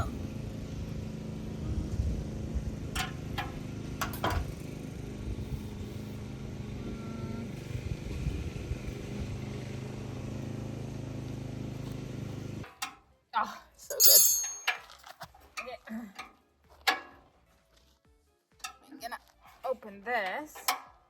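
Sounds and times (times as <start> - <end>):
small engine running: 0.0 - 12.7.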